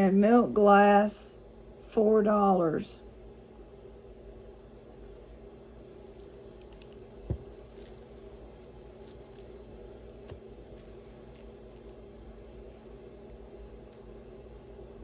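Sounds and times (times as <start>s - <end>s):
low room hum: 0.0s - 15.0s
jewelry clicking and rattling: 6.2s - 15.0s.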